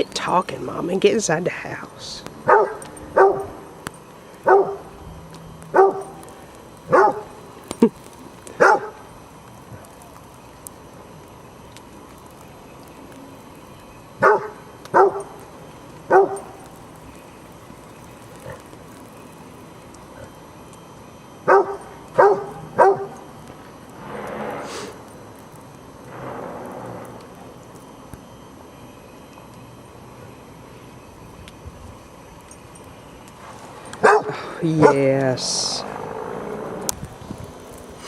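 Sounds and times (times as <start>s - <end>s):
dog barking: 2.4s - 3.6s, 4.4s - 4.9s, 5.7s - 6.2s, 6.9s - 7.3s, 8.6s - 9.0s, 14.2s - 15.3s, 16.1s - 16.6s, 21.5s - 23.2s, 34.0s - 35.0s.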